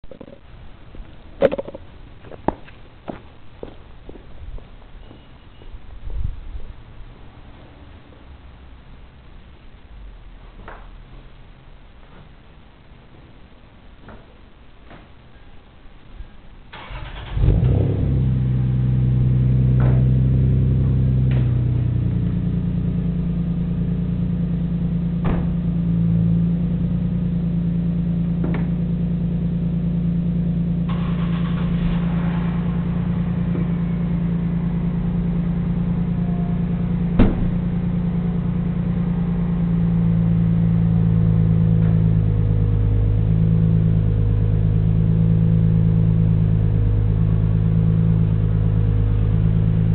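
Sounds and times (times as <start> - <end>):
car engine starting and idling: 16.6 - 49.9.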